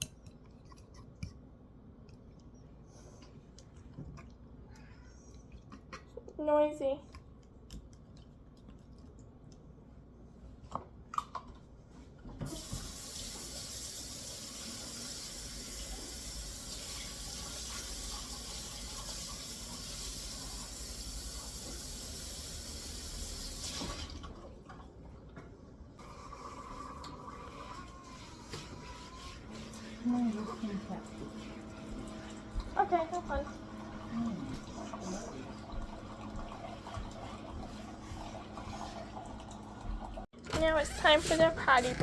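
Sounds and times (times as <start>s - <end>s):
water running from a tap: 12.4s - 24.4s, 26.0s - 40.3s.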